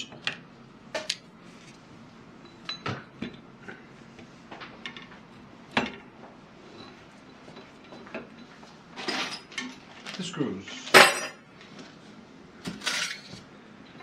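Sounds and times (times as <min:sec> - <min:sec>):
small metal parts clinking: 0:12.8 - 0:13.3.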